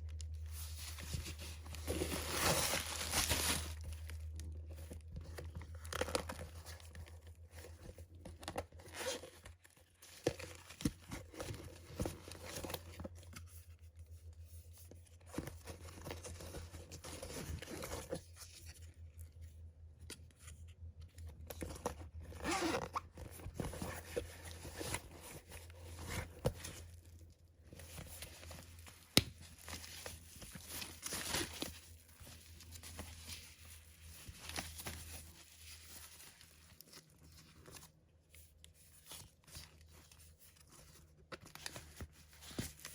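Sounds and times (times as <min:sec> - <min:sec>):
packaging crinkling and tearing: 0:00.2 - 0:07.2.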